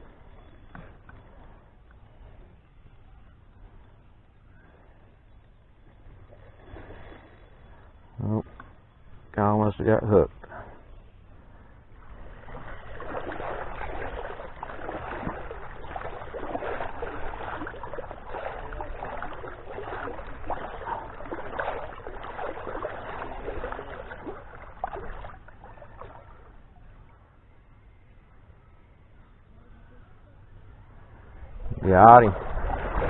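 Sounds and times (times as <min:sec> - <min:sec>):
river water splashing: 0:05.8 - 0:08.9, 0:10.5 - 0:26.8, 0:30.8 - 0:33.0.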